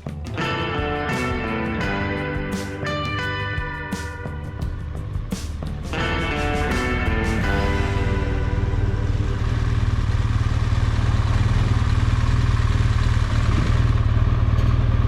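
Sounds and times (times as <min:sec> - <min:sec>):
music: 0:00.0 - 0:11.8
motorcycle engine drone: 0:00.0 - 0:15.0.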